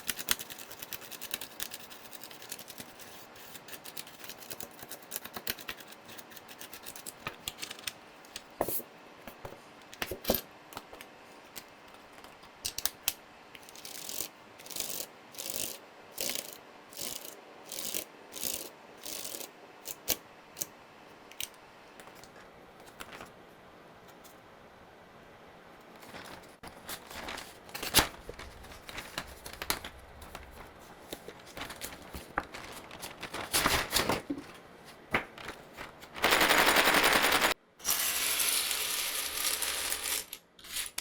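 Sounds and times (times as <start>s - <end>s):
keycaps clicking and scraping: 35.3s - 37.6s.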